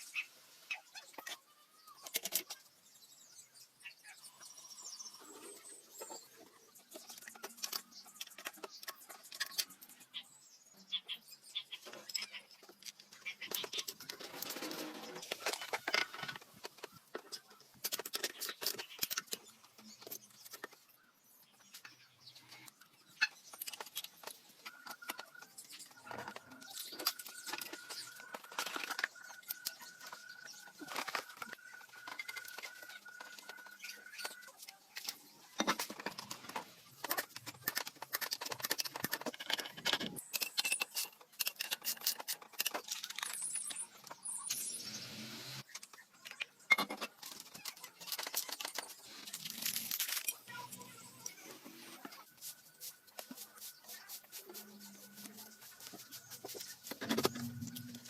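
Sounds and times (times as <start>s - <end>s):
metal tools clinking and knocking: 35.0s - 44.2s.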